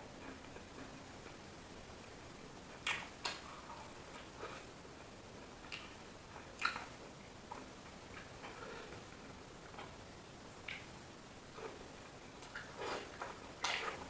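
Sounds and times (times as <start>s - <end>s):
person chewing food: 2.8s - 10.0s, 10.6s - 10.9s, 11.5s - 14.0s.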